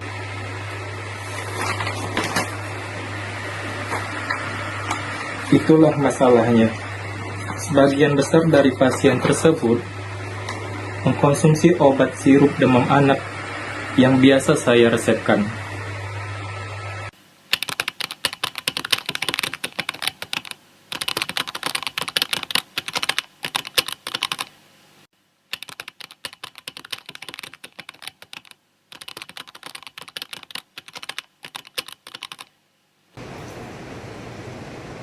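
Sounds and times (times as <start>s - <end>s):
rapid keyboard typing: 17.5s - 24.5s, 25.5s - 32.5s.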